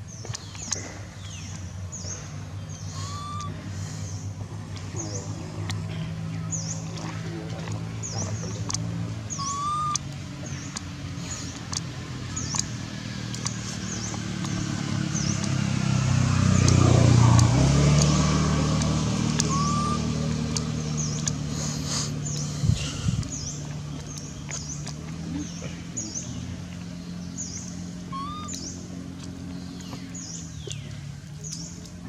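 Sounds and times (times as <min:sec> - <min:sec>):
bird chirping: 0:00.0 - 0:07.4, 0:08.0 - 0:32.0
vehicle engine hum: 0:00.0 - 0:32.0
whistled bird notes: 0:02.7 - 0:04.2, 0:09.3 - 0:10.7, 0:19.4 - 0:23.6, 0:27.3 - 0:28.9.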